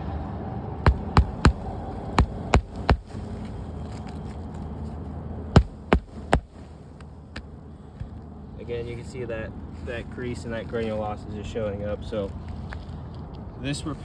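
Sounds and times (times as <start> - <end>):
hammer striking nails: 0.9 - 3.2, 5.6 - 6.7.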